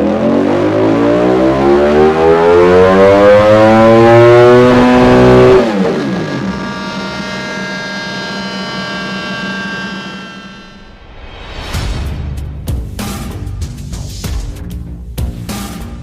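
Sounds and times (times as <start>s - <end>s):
motorcycle engine revving: 0.0s - 10.9s.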